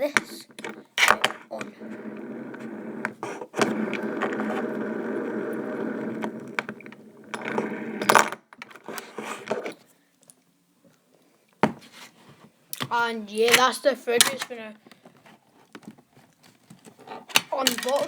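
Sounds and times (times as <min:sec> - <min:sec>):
fidget spinner rattling: 0:17.5 - 0:18.0.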